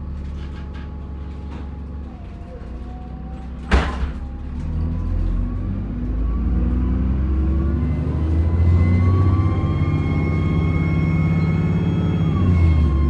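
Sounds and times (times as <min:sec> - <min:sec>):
diesel bus engine rumble: 0:00.0 - 0:13.0
turbo whine: 0:08.8 - 0:13.0.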